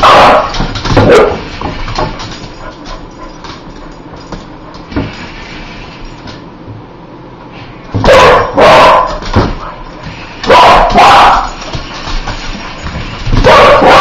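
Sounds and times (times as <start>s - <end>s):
dog barking: 0.0s - 1.4s, 8.0s - 9.3s, 10.4s - 11.6s, 13.4s - 14.0s.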